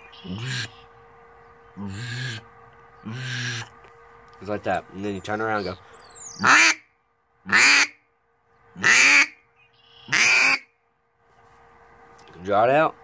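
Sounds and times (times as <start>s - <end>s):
duck call quacks: 0.3s - 0.8s, 1.8s - 2.4s, 3.0s - 3.7s, 6.4s - 6.8s, 7.5s - 8.0s, 8.8s - 9.4s, 10.1s - 10.7s.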